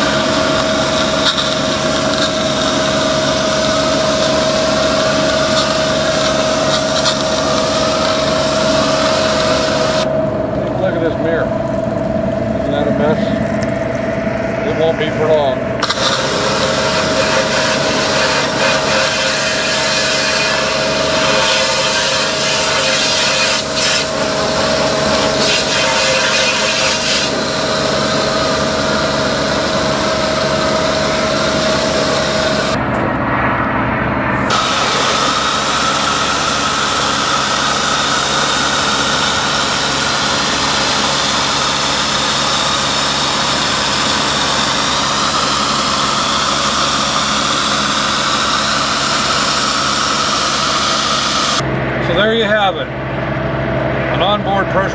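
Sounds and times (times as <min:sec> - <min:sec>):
pressure washer spray hissing: 0:00.0 - 0:10.1, 0:15.8 - 0:32.8, 0:34.5 - 0:51.6
pressure washer hum: 0:00.0 - 0:54.9.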